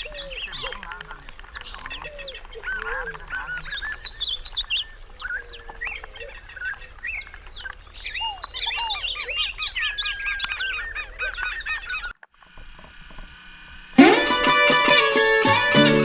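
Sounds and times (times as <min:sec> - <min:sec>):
many birds chirping: 0:00.0 - 0:12.1.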